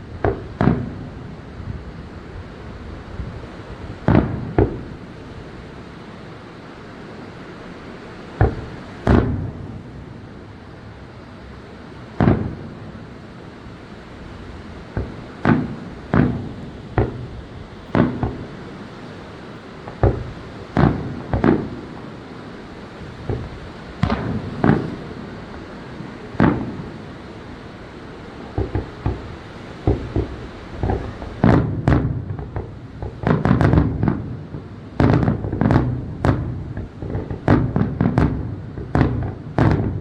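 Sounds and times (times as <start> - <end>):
steady background hiss: 0.0 - 40.0
firework shells bursting: 12.2 - 13.2, 14.7 - 40.0.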